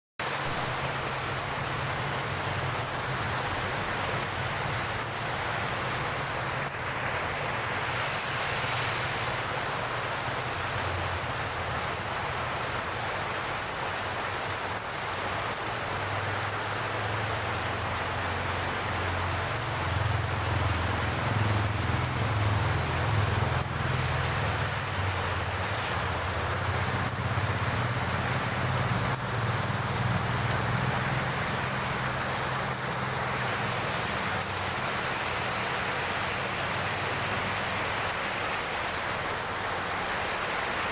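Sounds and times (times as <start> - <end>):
heavy rain hissing: 0.2 - 40.9.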